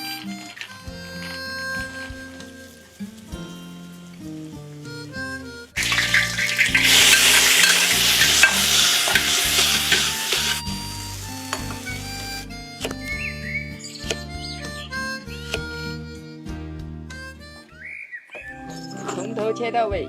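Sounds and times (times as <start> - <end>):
food sizzling in hot oil: 5.8 - 12.2.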